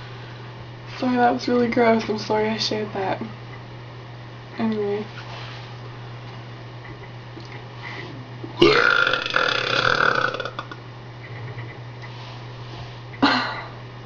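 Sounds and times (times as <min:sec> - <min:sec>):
loud forced burp: 0:08.6 - 0:10.8.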